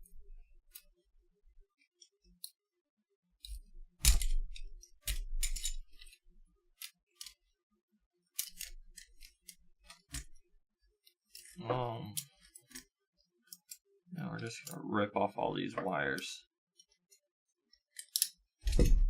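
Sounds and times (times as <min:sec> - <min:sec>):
small tools clicking and clinking: 0:03.4 - 0:07.5, 0:08.3 - 0:10.4, 0:11.0 - 0:14.8, 0:16.8 - 0:18.9.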